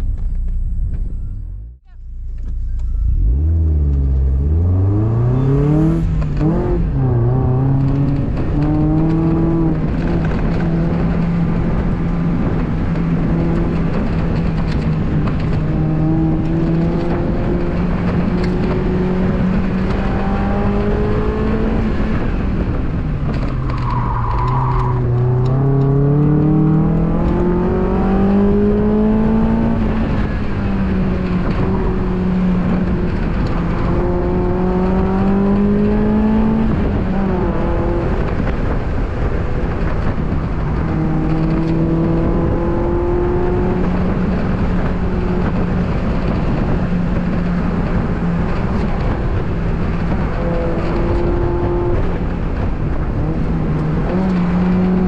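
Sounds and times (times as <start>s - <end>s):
car engine revving: 0.1s - 55.0s
tire squeal: 5.0s - 6.2s, 23.3s - 25.6s.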